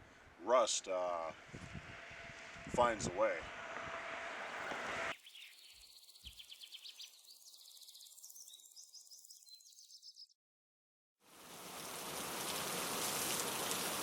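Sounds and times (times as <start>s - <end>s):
high-pitched chirping: 5.1s - 10.3s.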